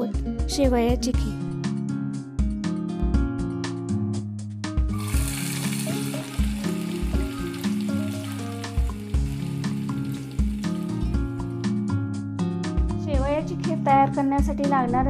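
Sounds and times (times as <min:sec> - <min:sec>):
background music with beat: 0:00.0 - 0:15.0
food sizzling in a pan: 0:04.9 - 0:11.7.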